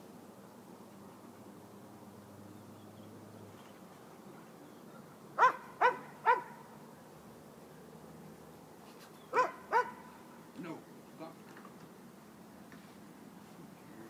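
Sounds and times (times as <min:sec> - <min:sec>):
dog barking: 0:05.4 - 0:06.6, 0:09.3 - 0:10.1.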